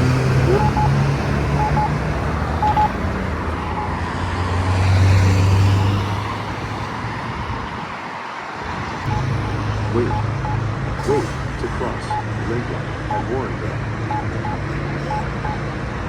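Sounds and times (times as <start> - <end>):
road traffic: 0.0 - 16.0
vehicle engine hum: 0.0 - 16.0
pedestrian button beeps: 0.4 - 1.0, 1.6 - 2.0, 2.6 - 3.0, 9.1 - 11.2, 12.0 - 13.5, 14.1 - 15.7.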